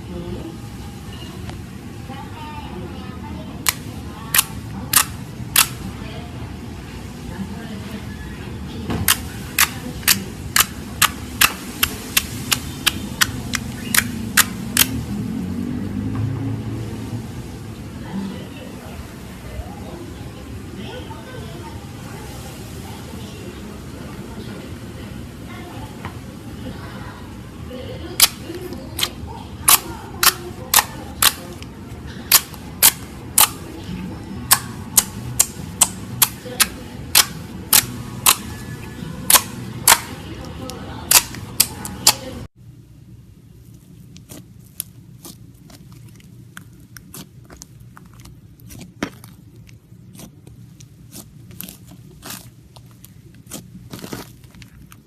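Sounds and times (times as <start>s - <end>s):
slime clicking and popping: 3.6s - 5.8s, 9.1s - 15.0s, 28.2s - 31.4s, 32.3s - 33.6s, 34.5s - 38.5s, 39.3s - 42.3s.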